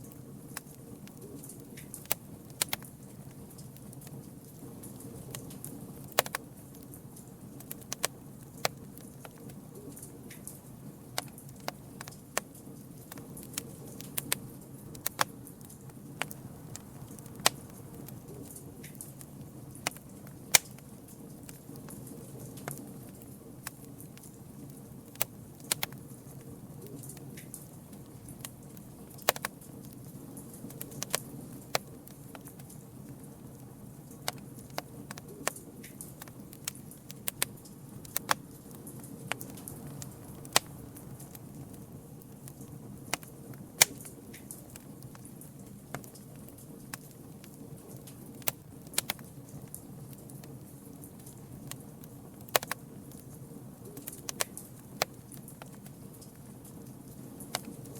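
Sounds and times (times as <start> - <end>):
wood crackling and popping: 0.0 - 57.9
low rush of flames: 0.1 - 57.9.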